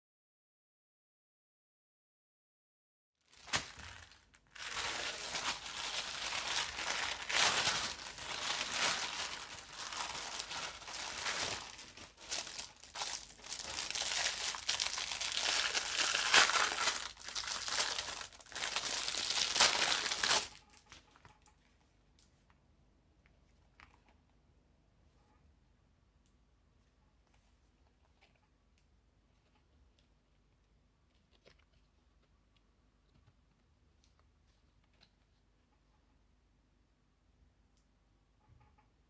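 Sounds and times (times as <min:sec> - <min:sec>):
packaging crinkling and tearing: 0:03.3 - 0:21.6.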